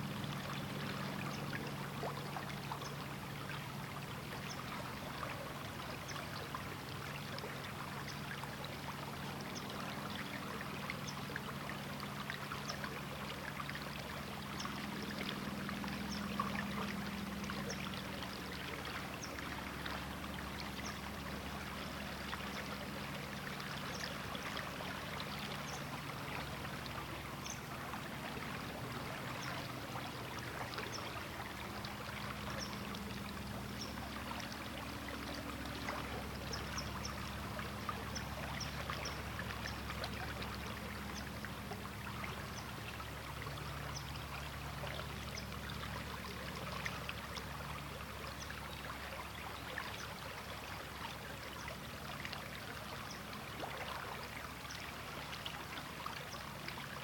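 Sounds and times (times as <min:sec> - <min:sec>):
river water flowing: 0:00.0 - 0:57.0
small splashes and bubbling: 0:00.0 - 0:57.0.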